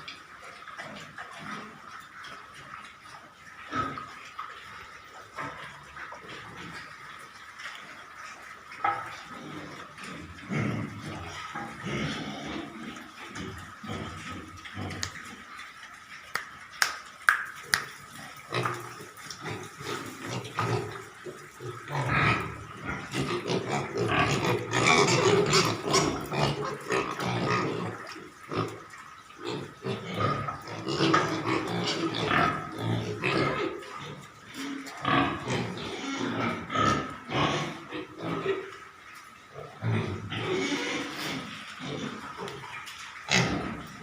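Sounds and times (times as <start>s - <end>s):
pigs grunting: 8.8s - 15.5s, 18.0s - 38.9s, 39.5s - 44.0s.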